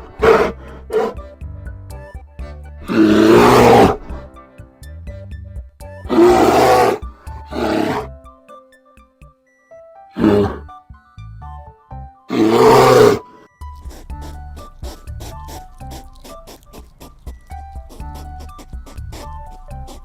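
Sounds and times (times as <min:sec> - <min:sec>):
soft background music: 0:00.0 - 0:20.0
large animal harsh calls: 0:02.8 - 0:04.3, 0:06.1 - 0:08.2, 0:10.2 - 0:10.6, 0:12.3 - 0:13.4.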